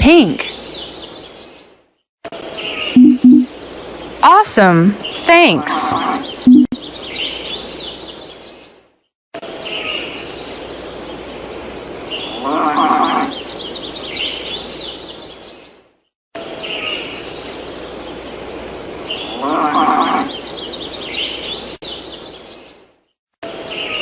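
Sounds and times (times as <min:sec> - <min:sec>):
birds chirping: 0:02.4 - 0:08.8, 0:09.5 - 0:15.8, 0:16.5 - 0:22.8
farm animal calling: 0:05.5 - 0:06.6, 0:12.3 - 0:13.4, 0:19.3 - 0:20.4.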